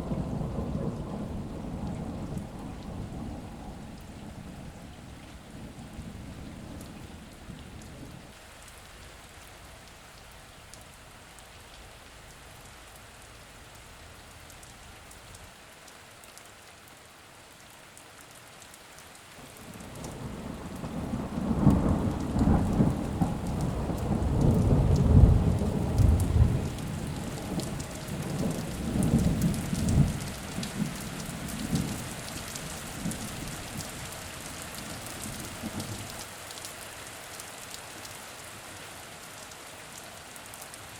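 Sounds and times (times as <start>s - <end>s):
rolling thunder: 0.0s - 8.3s, 19.7s - 32.1s
steady rain falling: 0.0s - 40.9s.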